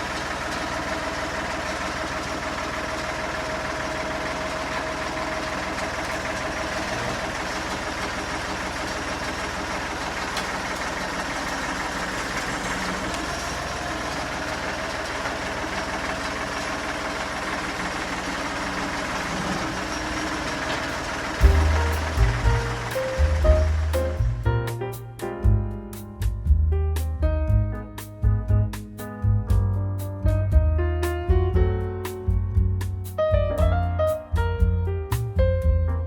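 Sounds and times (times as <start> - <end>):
tractor engine running: 0.0 - 36.0
music: 21.4 - 36.0.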